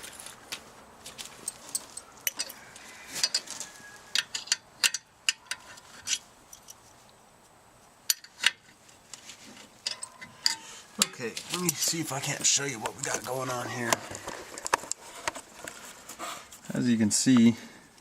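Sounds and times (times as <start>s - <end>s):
metal tools clinking: 3.2s - 6.9s, 9.6s - 15.4s.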